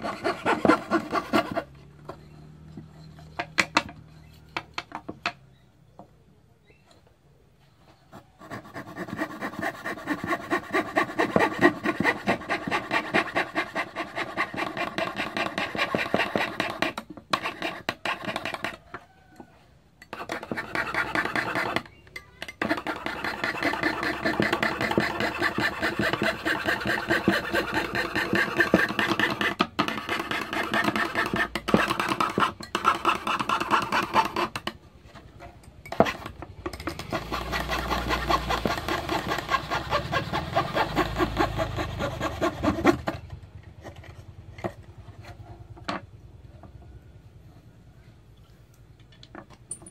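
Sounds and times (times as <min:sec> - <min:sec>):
fretsaw sawing: 0:00.0 - 0:03.3, 0:08.4 - 0:18.8, 0:20.1 - 0:34.6, 0:36.0 - 0:45.7.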